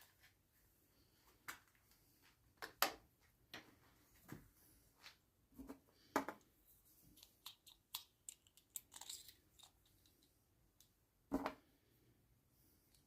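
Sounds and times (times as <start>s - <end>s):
pen parts clicking and tapping: 7.2s - 10.9s.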